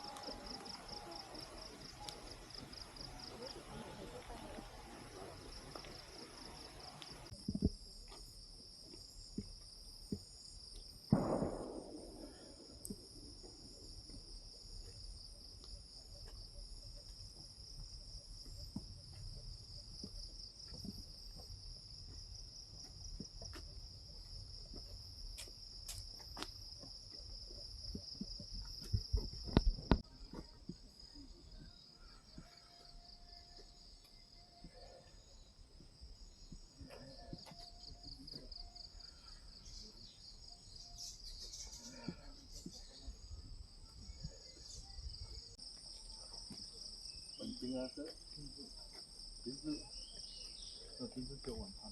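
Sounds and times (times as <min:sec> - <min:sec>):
insects trilling: 0:00.0 - 0:51.9
loud thud: 0:11.1 - 0:12.5.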